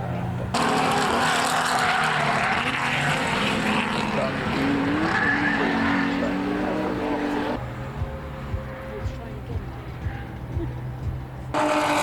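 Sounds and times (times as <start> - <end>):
race car engines at high revs: 0.3 - 7.6, 11.5 - 12.0.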